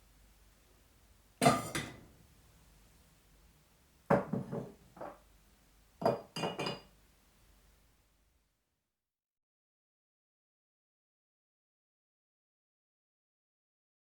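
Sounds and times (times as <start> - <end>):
teapot and china clinking: 6.0 - 6.9.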